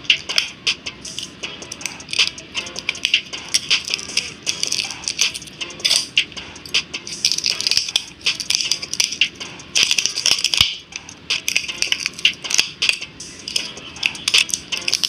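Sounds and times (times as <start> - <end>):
tools scraping and prying phone: 1.1 - 6.2.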